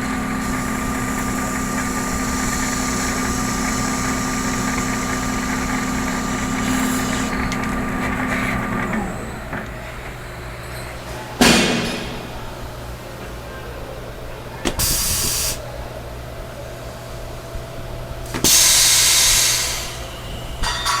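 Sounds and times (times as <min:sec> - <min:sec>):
hissing bursts: 0:00.0 - 0:08.8, 0:14.7 - 0:15.6, 0:18.3 - 0:20.2
lathe humming: 0:00.0 - 0:11.0.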